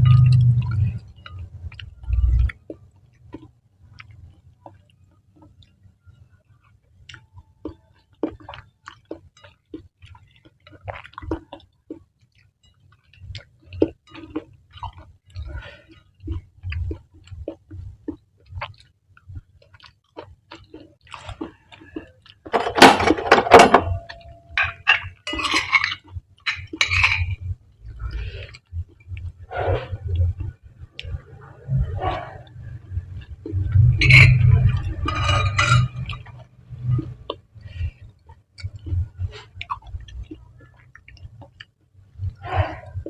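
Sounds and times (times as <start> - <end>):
close chewing of noodles: 0.0 - 22.5, 36.0 - 43.0.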